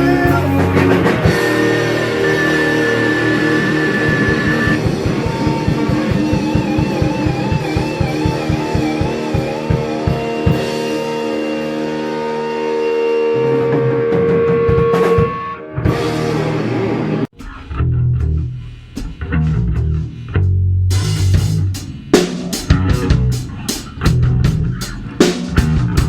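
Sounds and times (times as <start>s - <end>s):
drums and cymbals crashing: 0.0s - 11.6s, 17.3s - 17.8s, 18.5s - 19.4s, 20.9s - 26.0s
chugging low guitar riff: 0.0s - 26.0s
heavy metal band playing: 0.0s - 26.0s.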